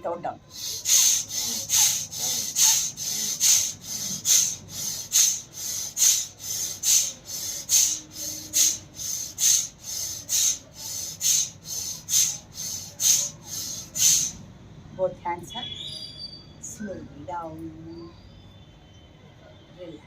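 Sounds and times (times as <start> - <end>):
person breathing hard and fast: 0.4 - 14.5.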